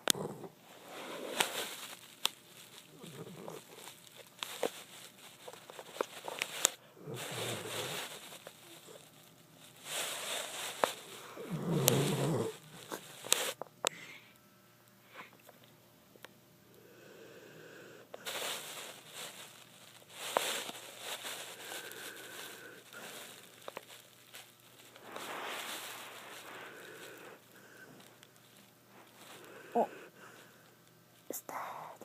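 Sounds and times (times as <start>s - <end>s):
animal snoring: 0.0s - 1.5s, 2.9s - 3.8s, 7.0s - 9.0s, 10.4s - 13.6s, 16.7s - 18.4s, 21.5s - 23.3s, 25.2s - 28.2s, 29.2s - 30.6s.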